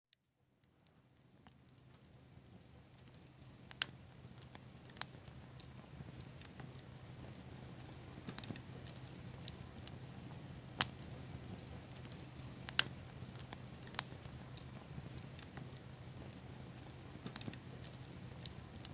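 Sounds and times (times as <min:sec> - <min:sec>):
soft steady hiss: 0:00.2 - 0:18.9
bonfire crackling: 0:00.6 - 0:18.9
sharp fire pops: 0:01.5 - 0:18.9.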